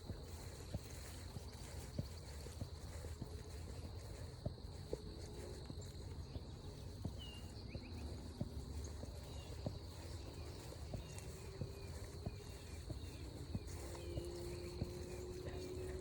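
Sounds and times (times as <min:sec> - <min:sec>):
footsteps on forest trail: 0:00.0 - 0:16.0
bird chirps: 0:05.8 - 0:16.0.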